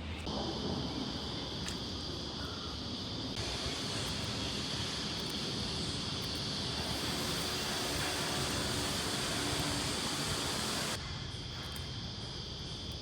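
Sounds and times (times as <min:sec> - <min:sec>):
high-pitched buzz: 0:03.4 - 0:11.0.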